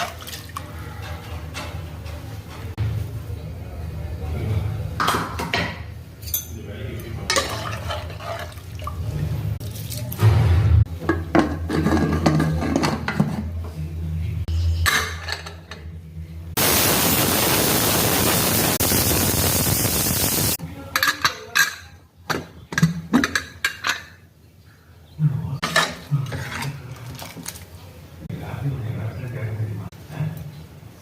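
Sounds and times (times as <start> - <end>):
utensils clinking in a pot: 5.4 - 9.0, 11.0 - 13.5, 14.8 - 15.9, 20.9 - 24.2, 25.6 - 27.7
loud even hiss: 16.6 - 20.6.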